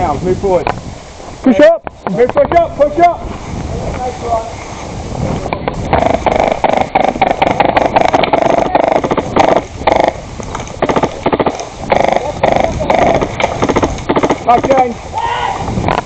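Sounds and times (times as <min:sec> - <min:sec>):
airsoft gun firing bursts: 0:05.9 - 0:10.2, 0:10.8 - 0:14.9.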